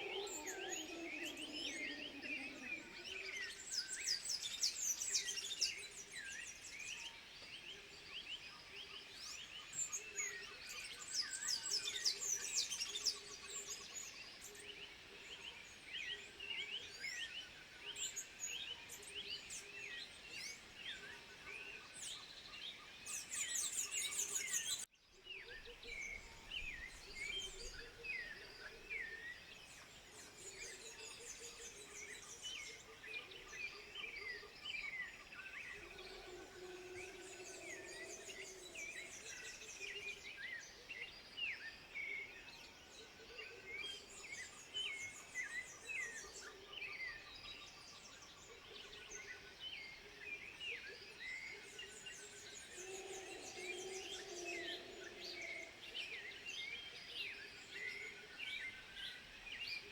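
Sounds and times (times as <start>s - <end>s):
birds chirping and whistling: 0.0s - 3.8s.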